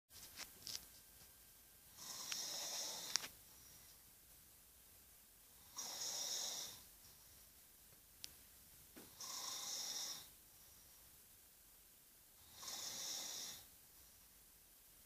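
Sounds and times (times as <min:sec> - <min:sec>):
loud snoring: 0:02.0 - 0:03.1, 0:05.6 - 0:06.8, 0:09.1 - 0:10.3, 0:12.4 - 0:13.7.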